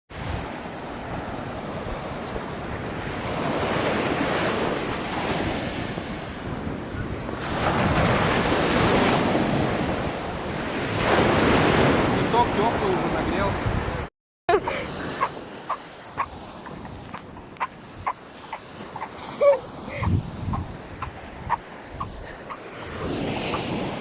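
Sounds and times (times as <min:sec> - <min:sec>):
surf washing onto beach: 0:00.2 - 0:14.1, 0:14.7 - 0:24.0
wind buffeting microphone: 0:15.2 - 0:24.0.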